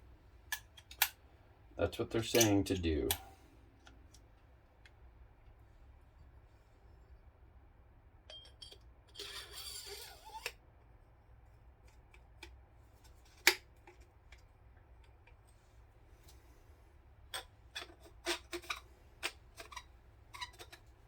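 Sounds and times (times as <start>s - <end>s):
sharp metal click: 2.3s - 3.3s.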